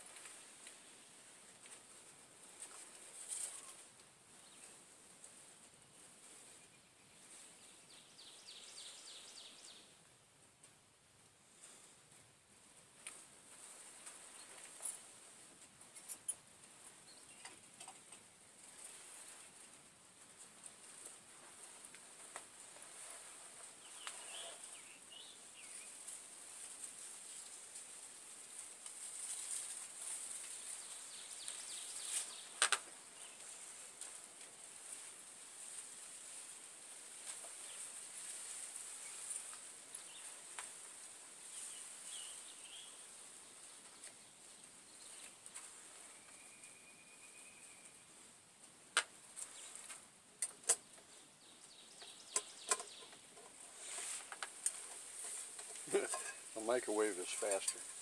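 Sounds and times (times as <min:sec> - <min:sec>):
steady high hiss: 0:00.0 - 0:58.0
food crackling and popping: 0:25.6 - 0:34.6, 0:48.6 - 0:51.2, 0:52.0 - 0:58.0.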